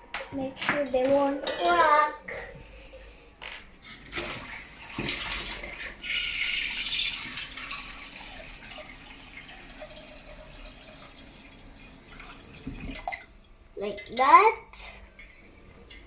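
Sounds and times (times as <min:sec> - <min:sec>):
water pouring into a pot: 0:04.1 - 0:13.5.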